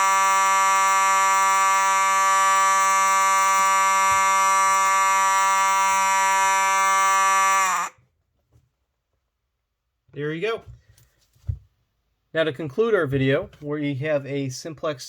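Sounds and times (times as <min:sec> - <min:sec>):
fire alarm horn: 0:00.0 - 0:07.9.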